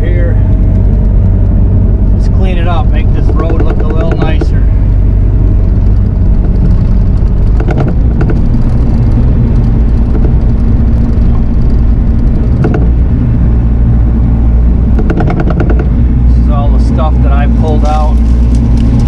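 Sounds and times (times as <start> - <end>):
diesel engine running: 0.0 - 19.0
short knocks: 3.1 - 4.7, 5.9 - 9.0, 10.0 - 13.1, 14.9 - 16.0.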